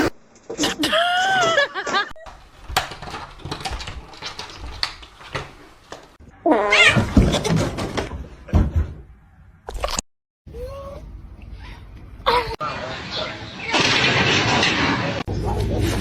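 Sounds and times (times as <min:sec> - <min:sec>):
cat meowing: 0:06.5 - 0:07.0.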